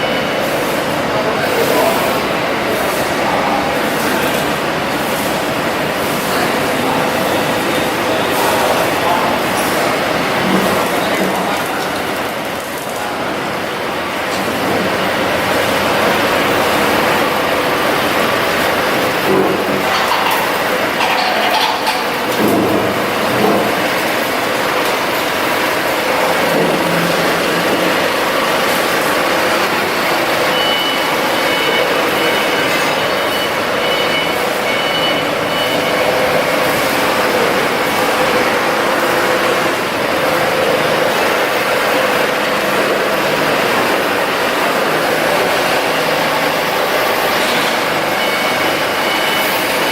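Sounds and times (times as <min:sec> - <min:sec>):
diesel generator running: 0:00.0 - 0:49.9
high beeps: 0:30.5 - 0:36.1.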